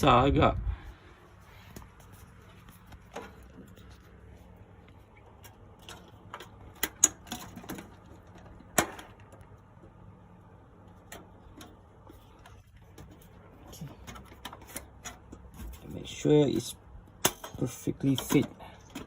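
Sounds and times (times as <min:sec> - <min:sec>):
computer parts clicking and knocking: 0:05.3 - 0:09.5, 0:17.1 - 0:19.0.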